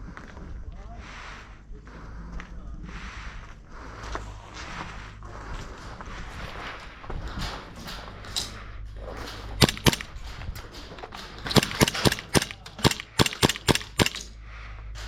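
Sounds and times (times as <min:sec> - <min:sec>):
airsoft gun shots: 0:09.6 - 0:10.2, 0:11.4 - 0:14.3.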